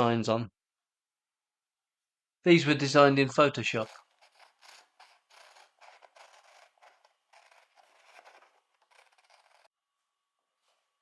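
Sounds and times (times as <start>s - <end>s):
scratching and rustling paper: 3.7s - 9.7s.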